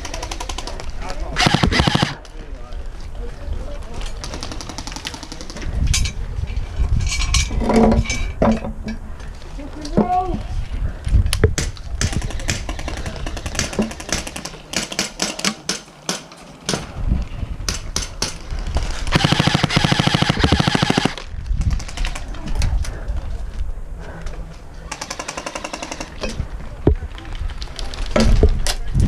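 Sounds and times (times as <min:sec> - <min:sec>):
airsoft rifles firing: 0:01.4 - 0:02.2, 0:11.6 - 0:16.3, 0:19.1 - 0:21.2, 0:24.9 - 0:26.2.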